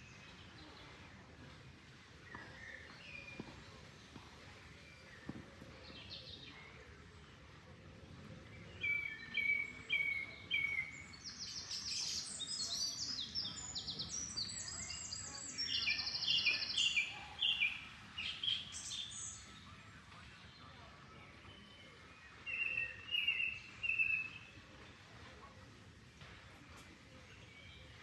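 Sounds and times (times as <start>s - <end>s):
songbirds singing: 0.0s - 25.3s, 26.2s - 28.0s.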